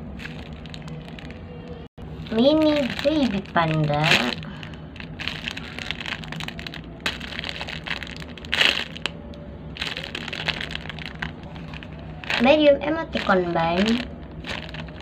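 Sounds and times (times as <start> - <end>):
foam toy squeezed crackling: 2.6 - 9.2, 9.8 - 12.5, 13.2 - 15.0.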